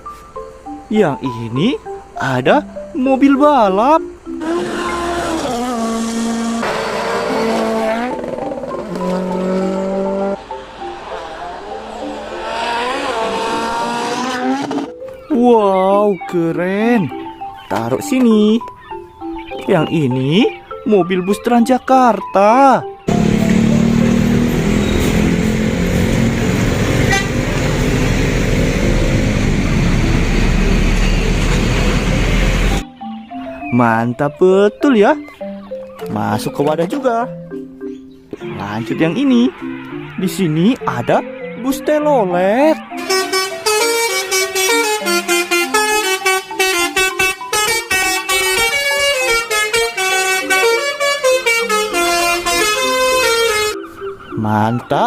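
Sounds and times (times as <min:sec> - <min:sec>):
road traffic: 0:00.0 - 0:15.4, 0:16.0 - 0:55.0
horn tooting: 0:04.3 - 0:15.0, 0:23.1 - 0:32.8, 0:42.9 - 0:53.8
bus engine running: 0:23.1 - 0:32.9, 0:43.0 - 0:53.8.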